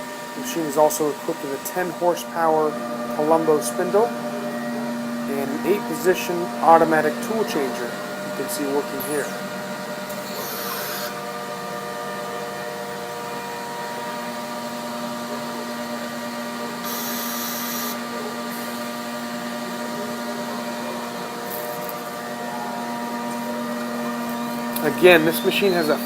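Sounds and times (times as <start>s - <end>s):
cnc router spindle whine: 0.0s - 26.0s
lower tone: 20.6s - 26.0s.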